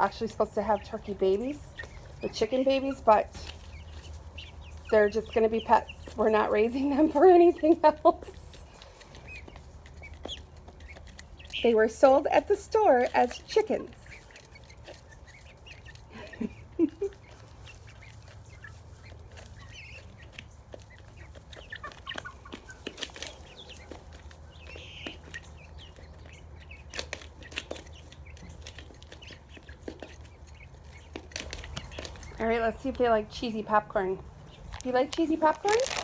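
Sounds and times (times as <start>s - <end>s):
chicks and poults calling: 0.0s - 36.0s.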